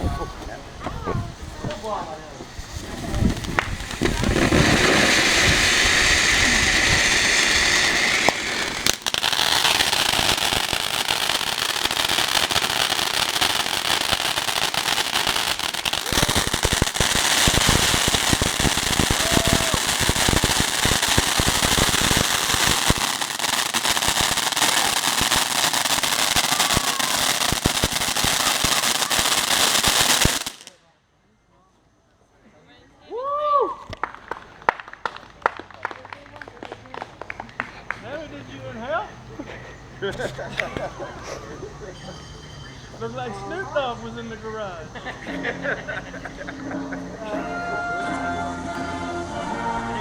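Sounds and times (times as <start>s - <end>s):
fireworks crackling pops: 0.0s - 30.8s, 33.8s - 38.6s, 40.0s - 41.4s
fireworks hissing: 0.0s - 30.8s, 35.8s - 50.0s
firework crack: 0.0s - 30.9s, 33.8s - 43.2s.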